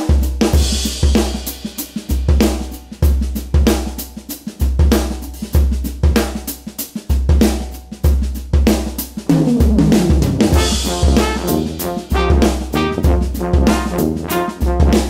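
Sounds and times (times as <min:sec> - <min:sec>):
drum kit beat: 0:00.0 - 0:15.0
deep bass notes: 0:09.3 - 0:14.9.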